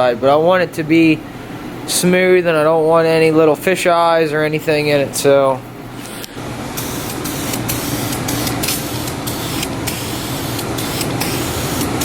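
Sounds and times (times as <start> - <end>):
spray can hissing bursts: 6.7 - 12.0.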